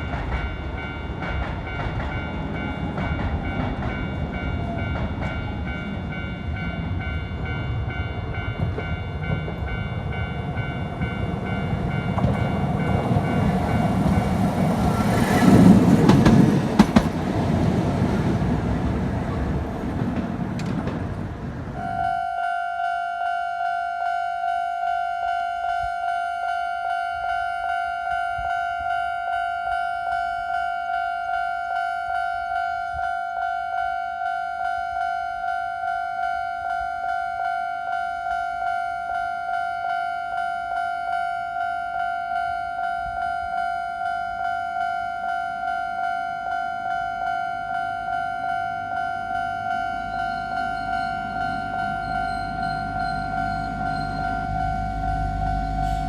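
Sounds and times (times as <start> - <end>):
train wheels running: 0.0 - 21.9, 46.4 - 56.0
crossing warning bell ringing: 0.0 - 56.0.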